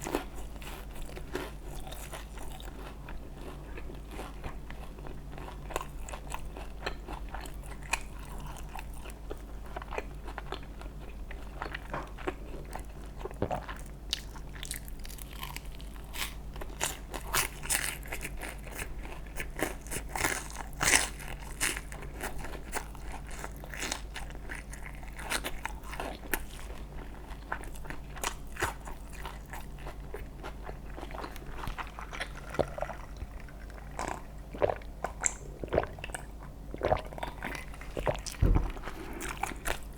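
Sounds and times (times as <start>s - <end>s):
chewing crunchy food: 0.0s - 39.9s
steady low hum: 29.2s - 39.9s.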